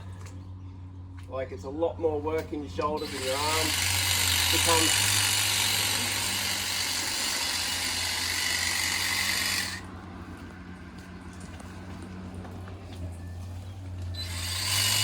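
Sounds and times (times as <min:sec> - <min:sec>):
hedge trimmer loud hiss: 0:03.0 - 0:09.8.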